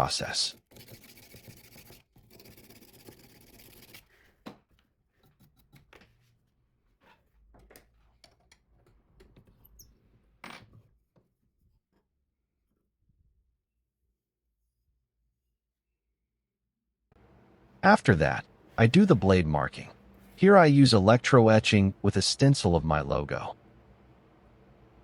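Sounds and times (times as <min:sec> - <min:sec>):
sandpaper rubbing on steel blade: 0:00.0 - 0:04.1.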